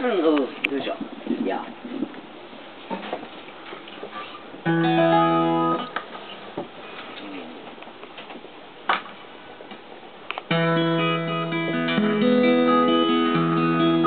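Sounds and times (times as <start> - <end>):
acoustic guitar strummed chords: 4.6 - 6.0, 10.5 - 14.0.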